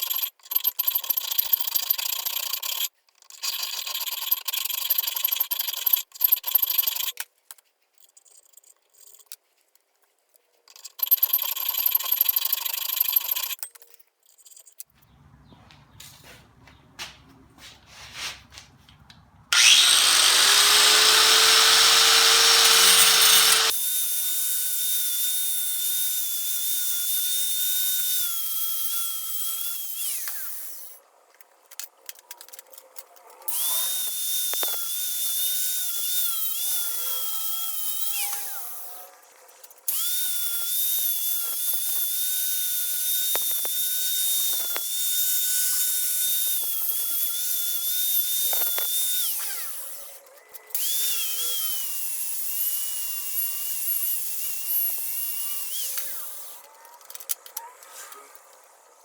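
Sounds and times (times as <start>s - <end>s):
electric drill boring through steel: 19.5s - 31.0s, 33.5s - 39.3s, 39.9s - 56.7s
harsh power tool noise: 19.5s - 31.0s, 33.5s - 39.3s, 39.9s - 50.2s, 50.8s - 56.7s.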